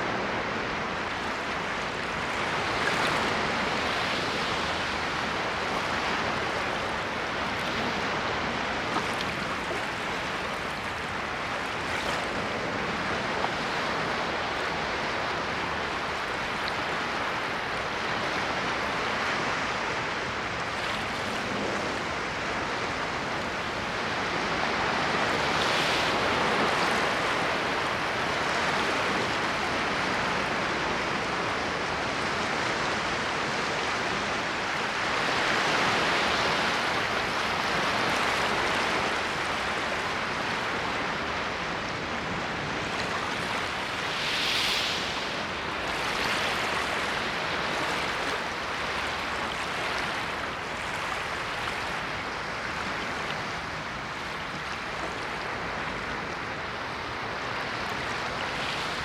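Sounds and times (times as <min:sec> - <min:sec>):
waves breaking: 0:00.0 - 0:59.0
ocean surf hiss: 0:43.5 - 0:50.4.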